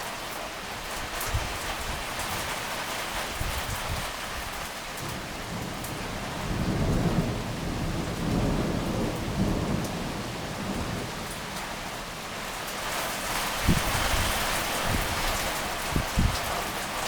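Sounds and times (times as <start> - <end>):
thunder rumbling: 5.0 - 12.3
heavy rain hissing: 5.0 - 17.0.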